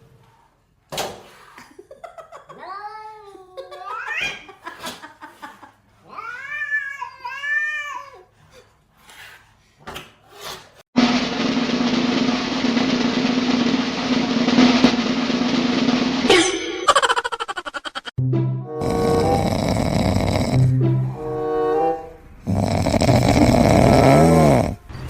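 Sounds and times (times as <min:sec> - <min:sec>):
loud music with drums: 0:11.0 - 0:17.1.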